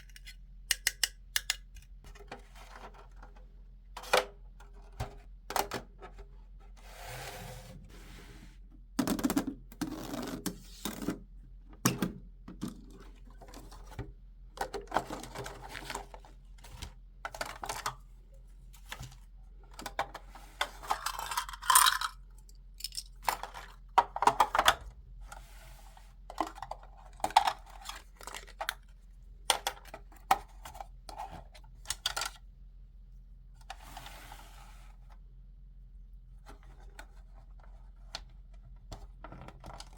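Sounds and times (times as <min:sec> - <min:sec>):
plastic toy pieces clicking: 0:00.0 - 0:01.8.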